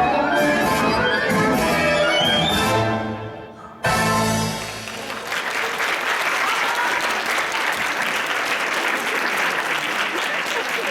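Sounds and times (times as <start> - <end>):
folk-dance music: 0.0 - 5.3
audience applauding: 4.4 - 10.9.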